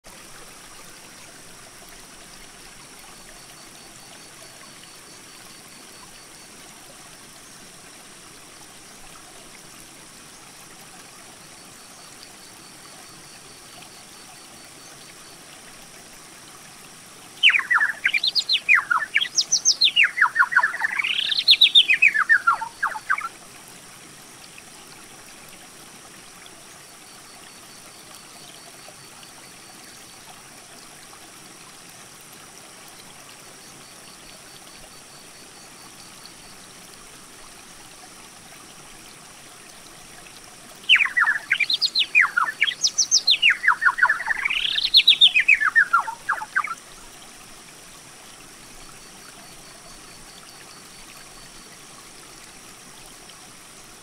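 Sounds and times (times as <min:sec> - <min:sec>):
songbird singing: 0:17.4 - 0:23.4, 0:40.8 - 0:46.8.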